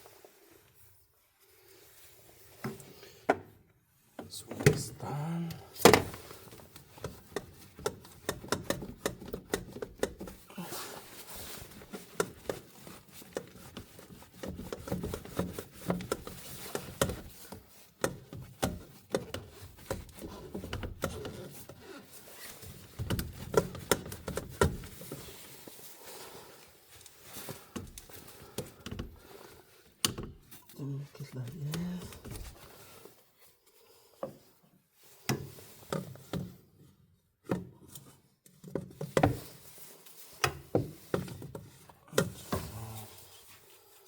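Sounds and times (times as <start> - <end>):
plastic pipe fittings clicking: 5.9 - 10.5.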